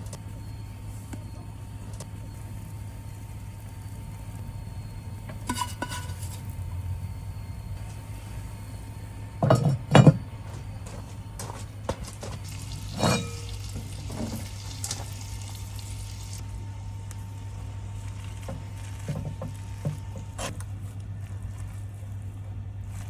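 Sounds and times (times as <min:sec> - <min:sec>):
steady low hum: 0:00.0 - 0:23.0
cookware and utensils clinking: 0:05.4 - 0:06.4, 0:09.4 - 0:10.2, 0:12.0 - 0:15.1.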